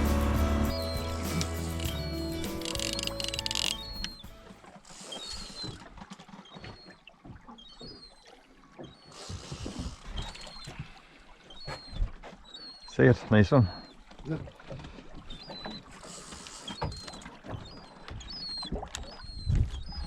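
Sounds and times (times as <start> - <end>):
background music: 0.0 - 4.7
short high squeaks: 0.7 - 4.3, 4.9 - 5.8, 15.3 - 20.0
water lapping against boat hull: 0.8 - 20.0
clicks: 1.3 - 4.2.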